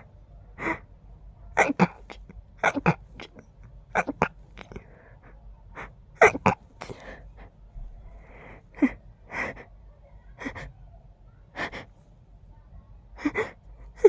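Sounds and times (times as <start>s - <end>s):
breaths: 0.6s - 0.9s, 4.6s - 6.0s, 6.7s - 9.8s, 11.5s - 12.1s, 13.2s - 14.0s
stifled sneezes: 1.5s - 5.0s, 5.8s - 7.2s.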